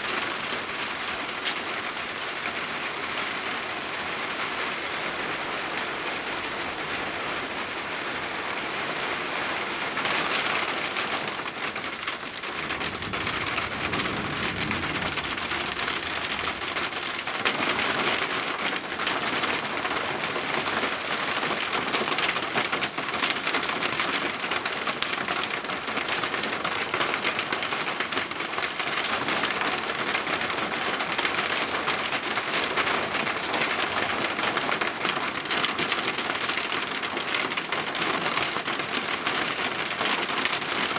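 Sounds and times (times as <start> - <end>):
heavy rain pouring: 0.0 - 40.9
thunder rumble: 11.3 - 18.4.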